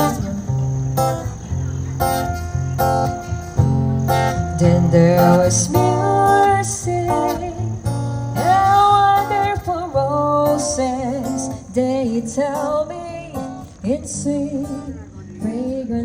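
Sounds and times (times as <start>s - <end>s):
strummed acoustic guitar: 0.0s - 16.0s
person singing: 4.4s - 7.8s.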